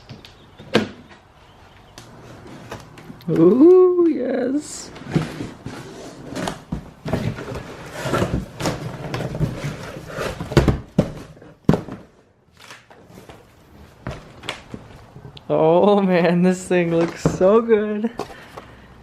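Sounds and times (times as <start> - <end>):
cardboard and packing rustling: 2.1 - 15.3, 16.5 - 18.8.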